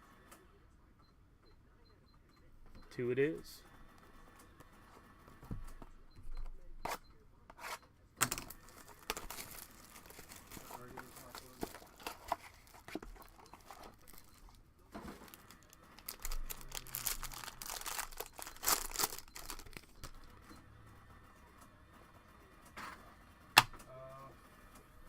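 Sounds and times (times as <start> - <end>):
wrapper tearing and crinkling: 8.7 - 14.2, 15.3 - 19.9.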